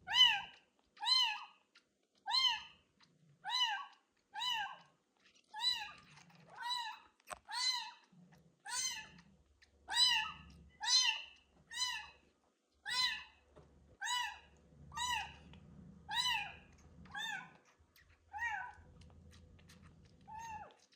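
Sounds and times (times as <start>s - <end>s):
kitten meowing: 9.9s - 12.1s, 12.9s - 13.3s.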